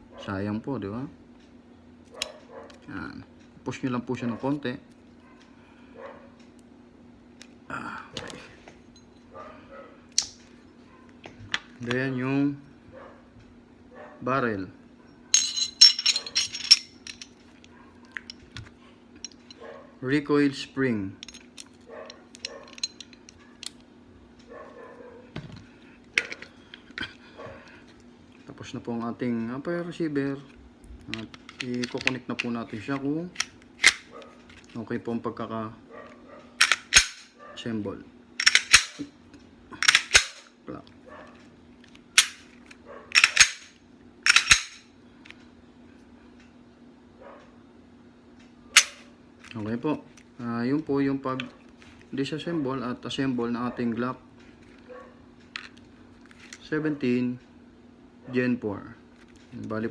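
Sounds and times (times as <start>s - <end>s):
pistol slide and trigger clacks: 33.4s - 34.1s, 36.6s - 37.3s, 38.4s - 39.1s, 39.8s - 40.4s, 42.2s - 42.5s, 43.2s - 43.7s, 44.3s - 44.8s, 48.8s - 49.0s.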